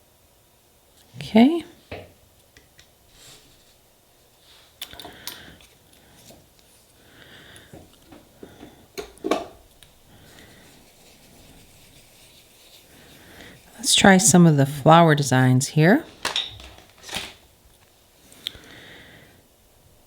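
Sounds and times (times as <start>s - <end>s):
tools and bottles clicking on table: 16.1s - 17.3s.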